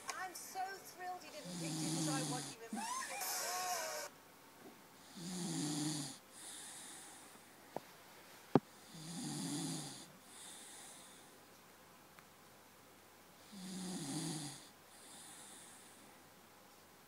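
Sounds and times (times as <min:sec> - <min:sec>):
dog snoring: 0:01.4 - 0:02.6, 0:05.0 - 0:07.2, 0:08.8 - 0:11.2, 0:13.4 - 0:16.0
dog breathing: 0:10.3 - 0:11.3.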